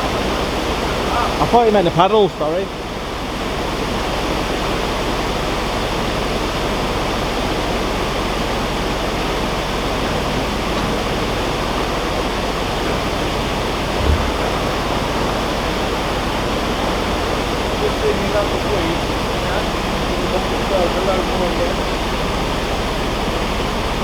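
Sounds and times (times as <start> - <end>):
low thump: 14.0 - 15.4.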